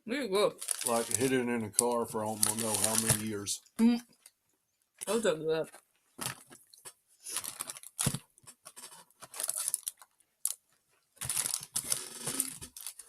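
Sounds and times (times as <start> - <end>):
plastic wrappers crinkling: 0.6 - 3.5, 6.2 - 13.0.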